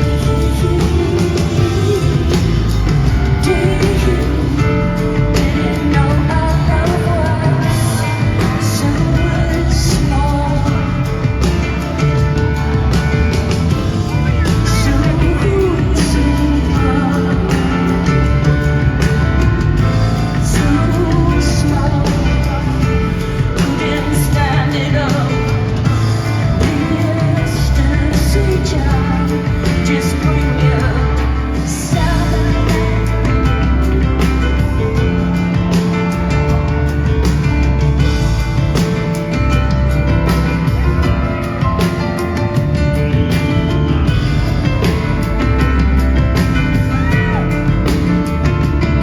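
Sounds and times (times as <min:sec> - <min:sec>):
woman singing: 0:00.0 - 0:13.2, 0:14.0 - 0:36.6
bass: 0:00.0 - 0:49.0
drums: 0:00.0 - 0:49.0.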